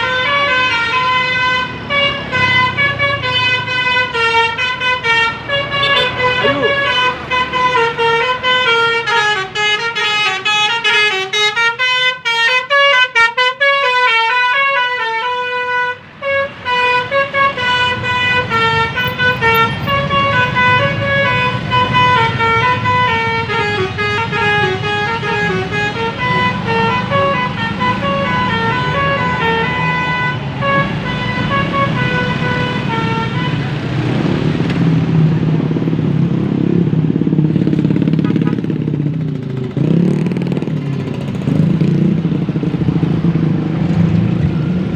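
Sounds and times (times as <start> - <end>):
bus engine rumble: 0.0 - 11.7, 14.2 - 44.9
musical air horn tune: 0.0 - 33.6
road noise: 0.0 - 44.9.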